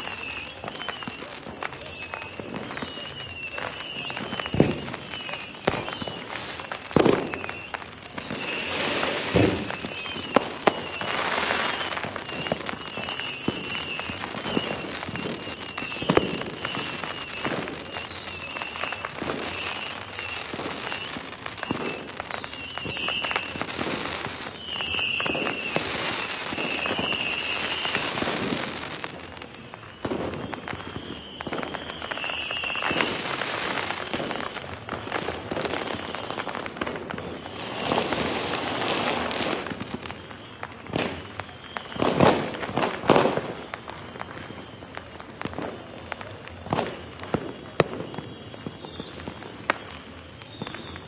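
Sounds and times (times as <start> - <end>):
high wavering whistle: 0.0 - 28.5, 29.7 - 36.6
fireworks bangs and crackling: 0.0 - 51.0.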